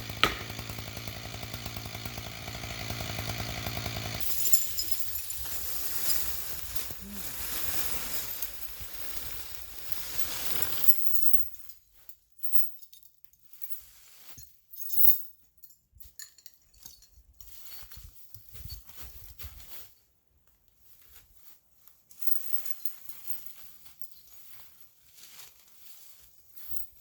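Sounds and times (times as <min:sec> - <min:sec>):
tree branches rushing down: 0:00.0 - 0:10.9.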